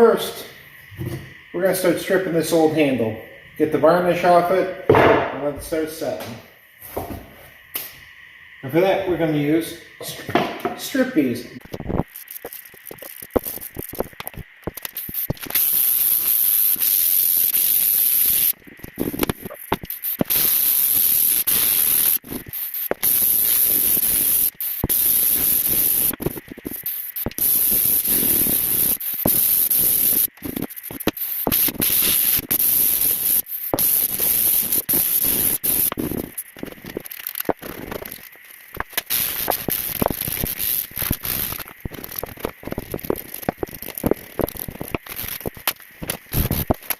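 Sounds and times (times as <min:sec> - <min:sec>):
aerosol spray bursts: 0:15.1 - 0:18.6, 0:20.0 - 0:26.1, 0:26.8 - 0:30.3, 0:31.2 - 0:36.3.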